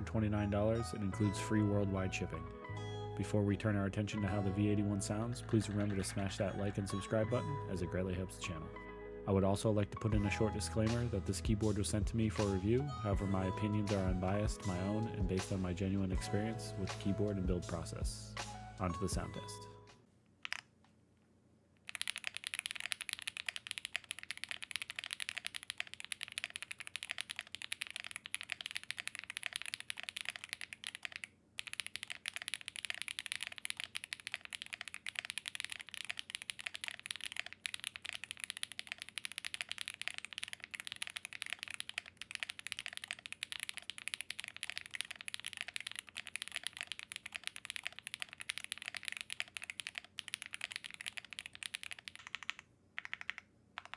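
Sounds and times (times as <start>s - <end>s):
fast typing on mechanical keyboard: 20.4s - 20.6s, 21.8s - 53.9s.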